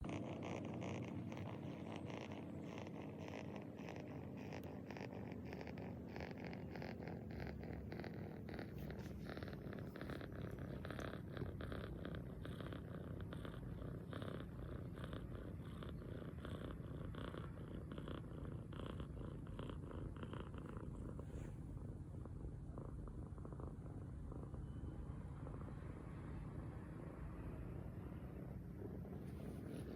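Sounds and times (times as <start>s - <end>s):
cat snoring: 0.0s - 26.4s, 27.0s - 29.9s.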